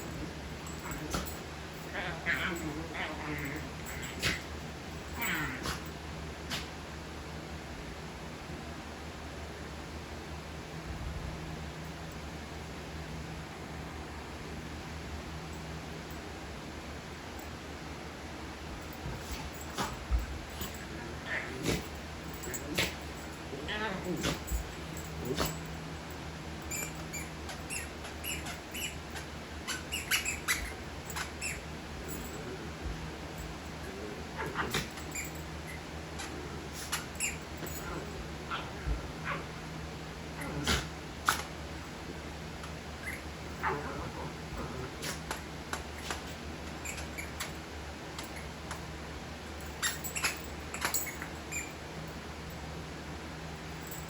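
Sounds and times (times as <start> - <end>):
dog toy squeaking: 26.7 - 29.0, 29.6 - 31.7, 37.2 - 37.5, 46.8 - 47.5, 49.8 - 51.7.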